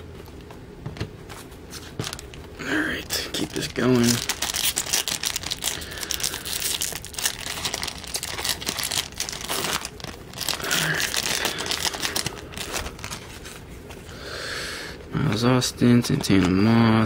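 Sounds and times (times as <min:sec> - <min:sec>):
wrapper crinkling: 0:01.7 - 0:13.8.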